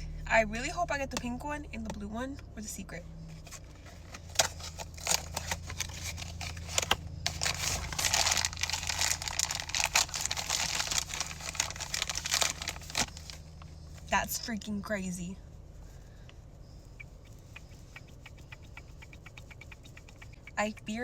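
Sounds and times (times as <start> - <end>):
packaging crinkling and snapping: 4.1 - 13.5.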